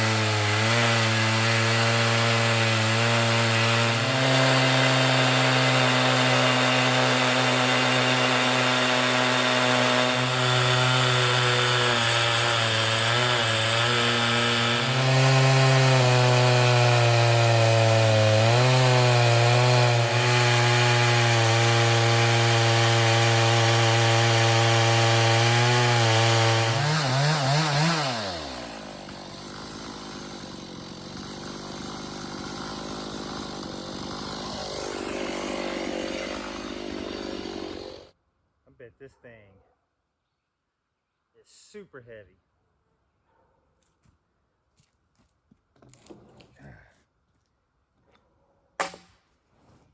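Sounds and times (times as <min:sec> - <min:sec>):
chainsaw cutting log: 0:00.0 - 0:38.2, 0:48.8 - 0:49.2.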